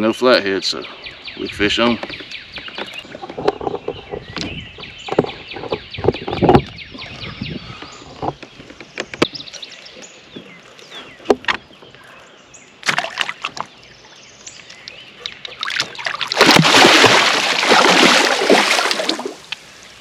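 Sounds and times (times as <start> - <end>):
faint bird chirps: 0.6 - 12.8
water splashing against kayak: 14.8 - 19.8.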